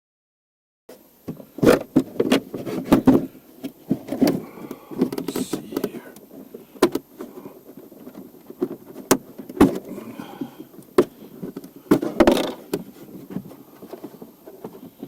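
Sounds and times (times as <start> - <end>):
plastic parts clicking and knocking: 10.8 - 14.8.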